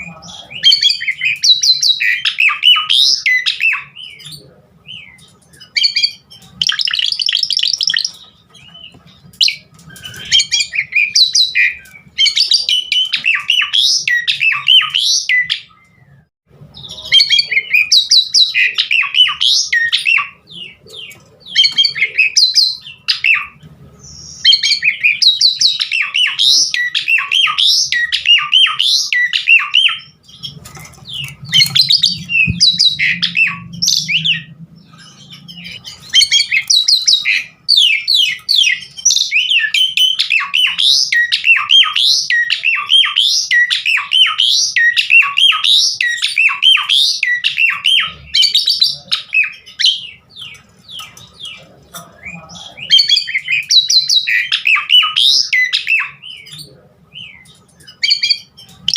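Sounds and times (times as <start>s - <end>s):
starling singing: 0.0s - 58.9s
faint low hum: 30.2s - 39.0s.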